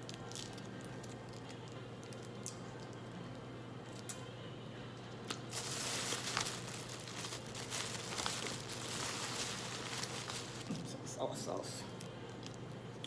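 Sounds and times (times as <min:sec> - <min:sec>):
plastic packet crinkling and tearing: 0:05.3 - 0:10.9.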